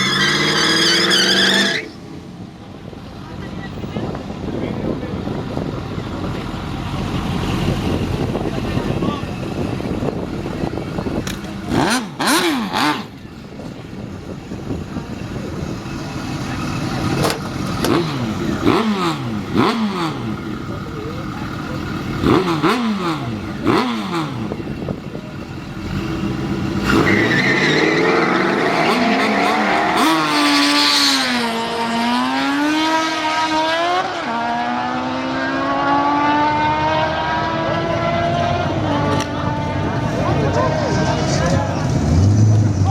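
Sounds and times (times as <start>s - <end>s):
engines idling: 2.0s - 30.1s, 38.6s - 42.9s
engine revving: 6.9s - 13.2s, 16.5s - 42.9s.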